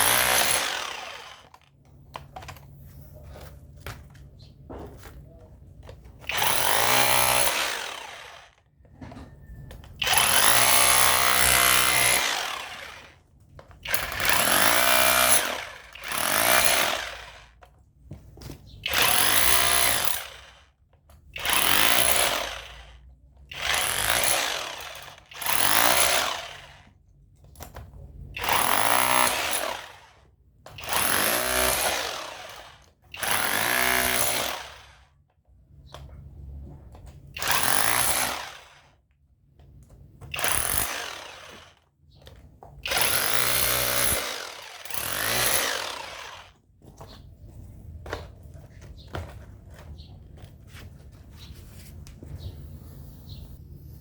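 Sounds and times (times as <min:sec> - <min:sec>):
rotary hammer breaking concrete: 0:00.0 - 0:01.6, 0:06.2 - 0:08.6, 0:10.0 - 0:13.2, 0:13.8 - 0:17.5, 0:18.9 - 0:20.6, 0:21.4 - 0:22.8, 0:23.5 - 0:26.8, 0:28.4 - 0:30.0, 0:30.8 - 0:35.0, 0:37.4 - 0:38.9, 0:40.2 - 0:41.8, 0:42.8 - 0:46.6.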